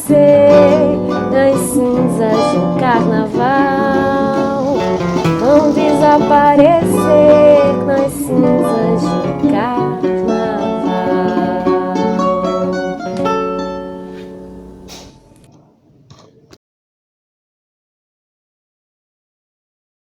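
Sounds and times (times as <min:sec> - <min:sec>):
acoustic guitar samba music: 0:00.0 - 0:15.3.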